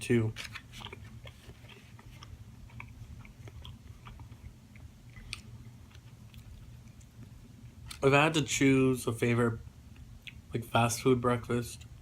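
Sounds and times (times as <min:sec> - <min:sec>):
person chewing food: 0:00.6 - 0:08.0, 0:10.0 - 0:10.4.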